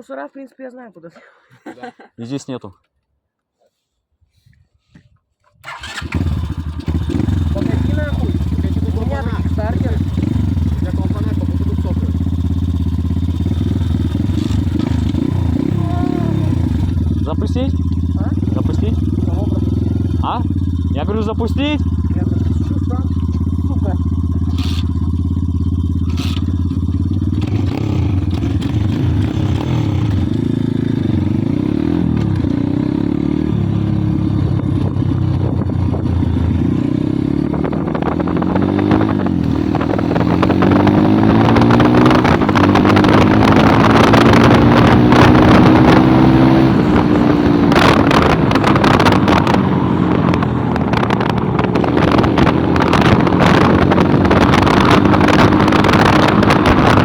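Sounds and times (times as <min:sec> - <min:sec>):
motorbike engine revving: 0:05.6 - 0:57.0
wind noise on microphone: 0:33.5 - 0:57.0.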